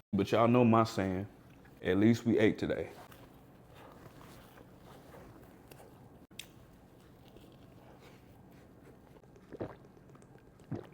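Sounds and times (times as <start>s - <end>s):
chewing and biting sandwich: 3.1s - 10.9s.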